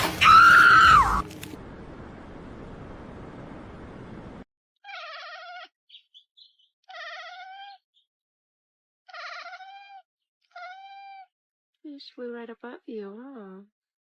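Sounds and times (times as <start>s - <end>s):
cat meowing: 4.8s - 5.7s, 6.8s - 7.8s, 9.1s - 11.3s.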